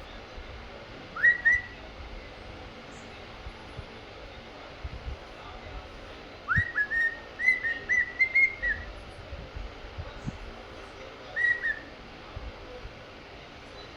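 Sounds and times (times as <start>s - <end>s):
cockatiel whistling: 1.2s - 1.8s, 6.5s - 8.9s, 11.3s - 11.9s.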